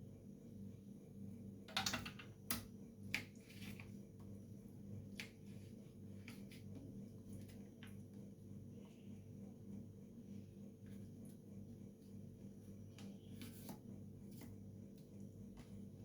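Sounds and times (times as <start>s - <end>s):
steady low hum: 3.9s - 16.0s.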